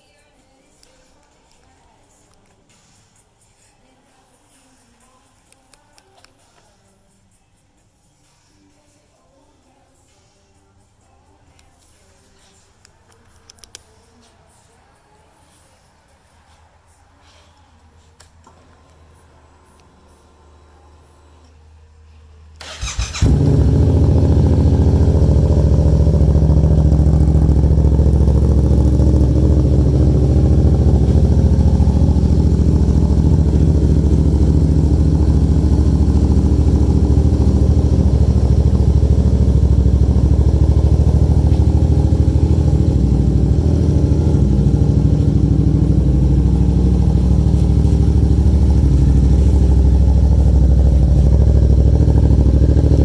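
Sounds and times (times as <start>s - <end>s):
engine cranking on starter: 22.6s - 32.8s
motorcycle engine idling: 22.6s - 53.0s.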